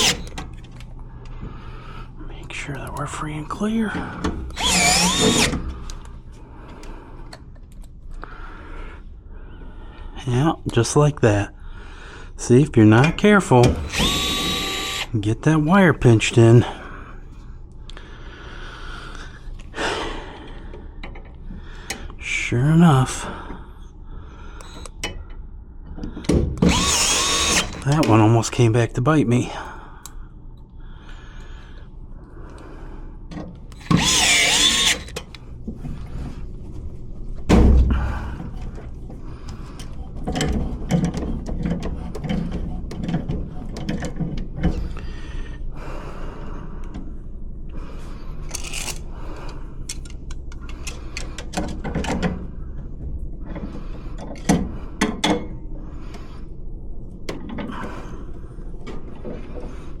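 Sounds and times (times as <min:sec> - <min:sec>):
cordless drill running: 0:00.0 - 0:00.4, 0:04.5 - 0:05.7, 0:13.8 - 0:15.2, 0:26.6 - 0:28.0, 0:33.8 - 0:35.2.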